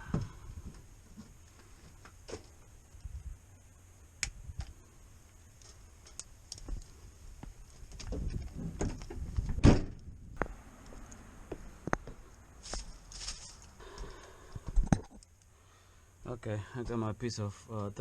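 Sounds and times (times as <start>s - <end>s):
heavy thump: 8.1s - 10.0s.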